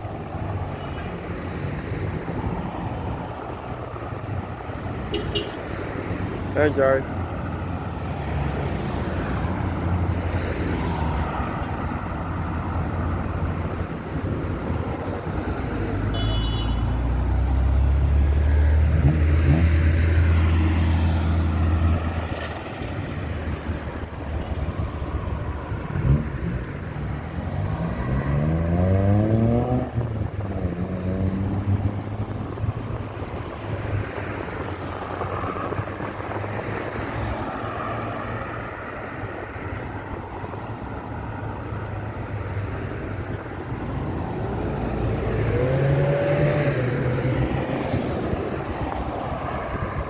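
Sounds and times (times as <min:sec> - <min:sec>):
cars and trucks passing: 0:00.0 - 0:50.0
vehicle accelerating: 0:16.9 - 0:24.2, 0:24.8 - 0:37.8, 0:43.7 - 0:50.0.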